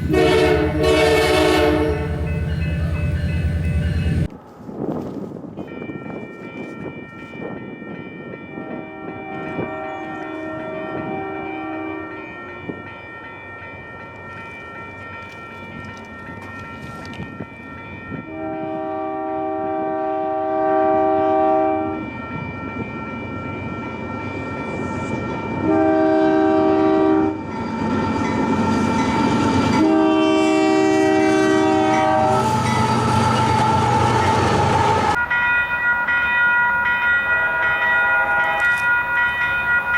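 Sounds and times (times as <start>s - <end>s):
locomotive air horn: 0.0s - 2.3s, 8.5s - 12.7s, 18.3s - 22.0s, 25.6s - 27.4s, 29.8s - 35.2s
railroad crossing bell ringing: 0.0s - 4.5s, 5.4s - 39.9s
train rumble and wheel clatter: 0.0s - 39.9s.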